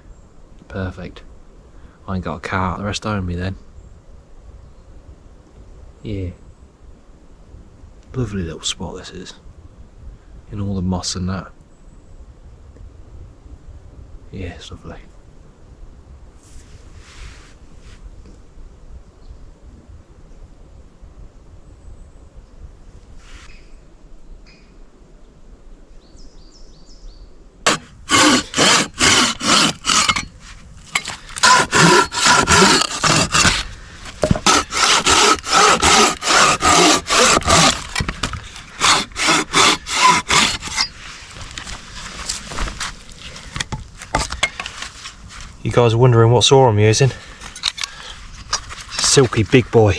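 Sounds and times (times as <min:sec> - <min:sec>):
gusty wind on microphone: 0:02.8 - 0:11.1, 0:11.9 - 0:24.1
short rustle: 0:16.4 - 0:18.2, 0:40.1 - 0:45.6
pruning saw cutting wood: 0:27.7 - 0:42.6, 0:43.6 - 0:44.8.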